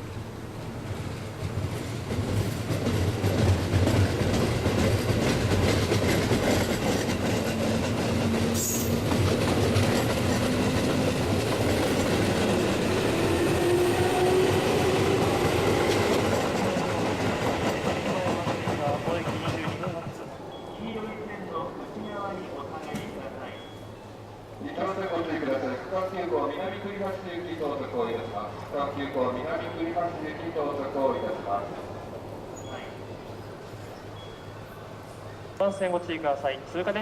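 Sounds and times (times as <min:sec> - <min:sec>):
train wheels clacking: 0:01.0 - 0:20.2.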